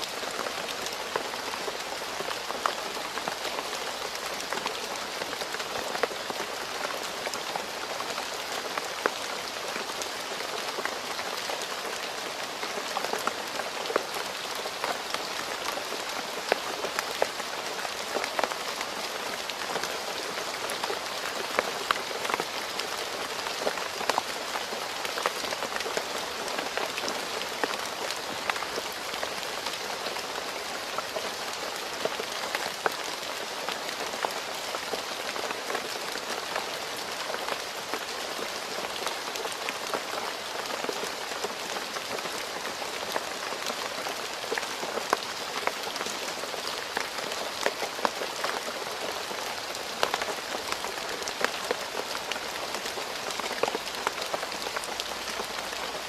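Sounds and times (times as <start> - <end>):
rain hissing on a road: 0.0 - 56.0.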